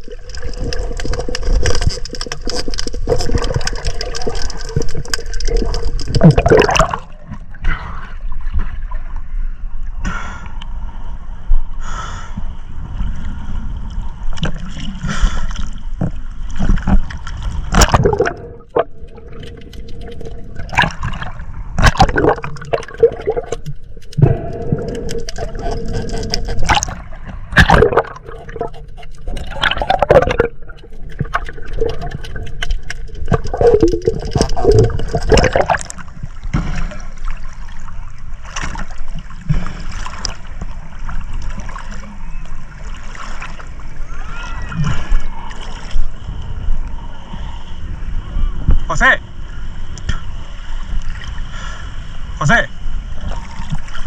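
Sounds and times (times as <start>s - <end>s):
water sloshing and gurgling: 0.0s - 54.0s
loud water splashes: 17.6s - 19.6s, 20.3s - 28.7s.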